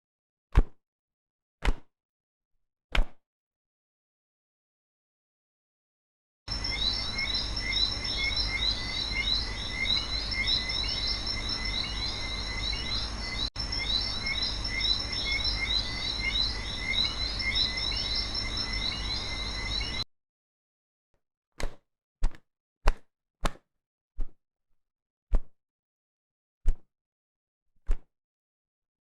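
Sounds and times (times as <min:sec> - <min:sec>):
steady low hum: 0:06.5 - 0:20.0.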